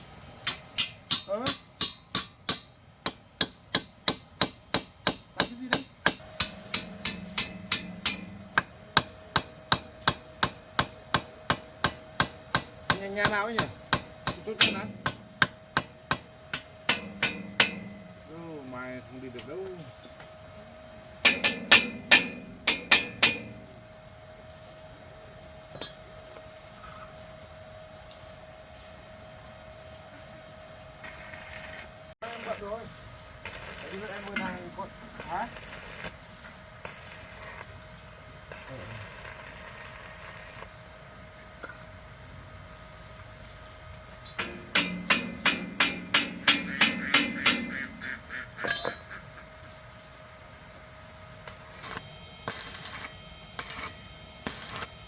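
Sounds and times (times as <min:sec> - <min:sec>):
faint hum: 0:00.0 - 0:55.0
hammer striking steel: 0:00.4 - 0:18.8, 0:21.2 - 0:23.8, 0:44.3 - 0:49.1
metal ringing: 0:00.4 - 0:18.8, 0:21.2 - 0:23.8, 0:44.3 - 0:49.2.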